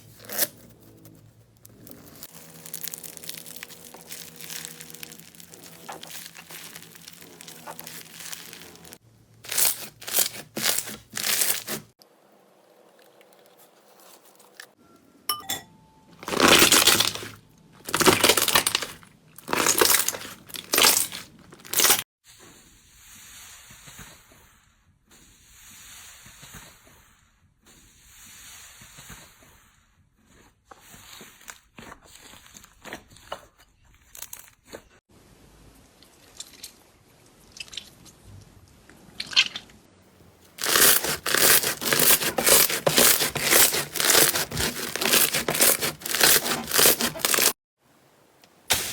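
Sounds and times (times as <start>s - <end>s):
slime squished by hand: 1.7s - 11.9s, 16.2s - 22.0s.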